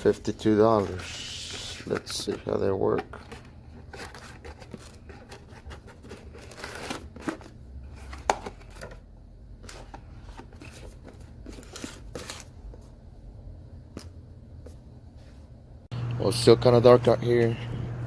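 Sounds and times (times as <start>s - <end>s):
steady low hum: 0.0s - 18.0s
handling rustling: 1.8s - 9.0s, 9.6s - 13.0s.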